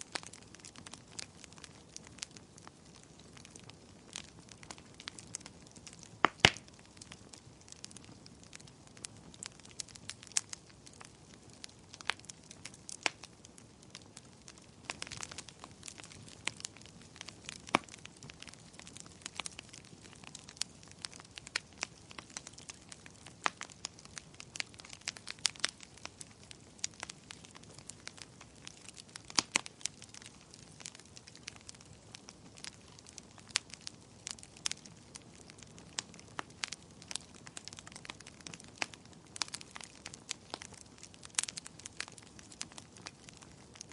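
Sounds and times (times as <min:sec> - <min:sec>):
soft steady hiss: 0:00.0 - 0:43.9
wood fire crackling: 0:00.0 - 0:43.9.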